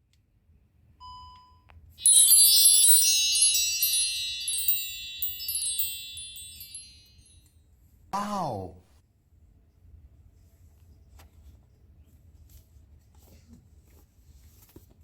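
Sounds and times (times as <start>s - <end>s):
shimmering bell chime: 2.0s - 7.3s.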